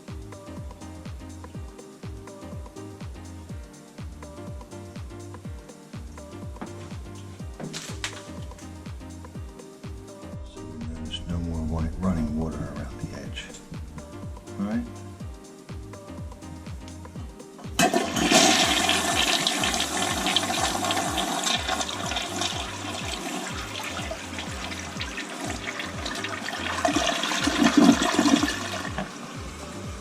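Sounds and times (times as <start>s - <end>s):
background music with steady beat: 0.0s - 30.0s
toilet flushing: 17.8s - 30.0s.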